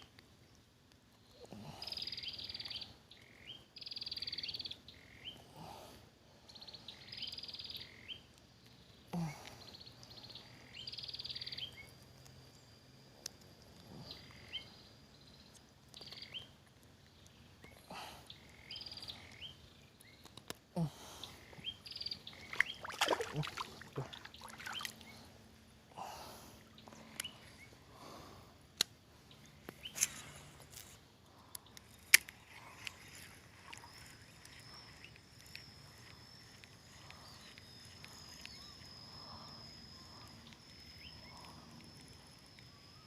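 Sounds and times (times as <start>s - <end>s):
water splashing in a stream: 22.4s - 25.0s
steady thin high tone: 32.3s - 43.0s.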